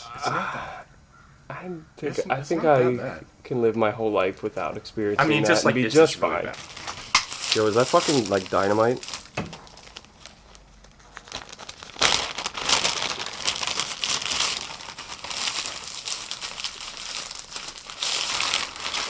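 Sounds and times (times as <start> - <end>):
crinkling and rustling: 6.5 - 19.0.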